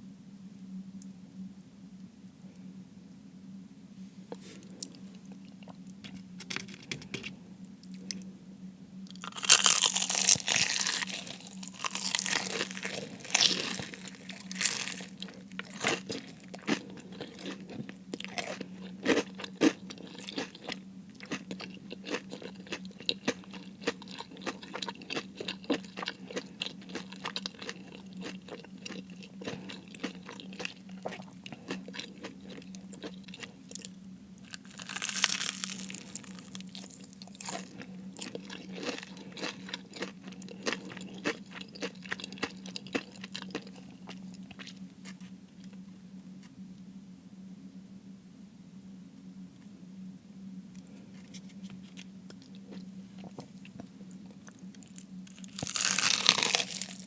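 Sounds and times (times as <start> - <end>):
chewing with small crackles: 4.3 - 8.3, 9.0 - 46.6, 50.7 - 57.0
crunchy bites of fried food: 9.1 - 45.8, 51.3 - 57.0.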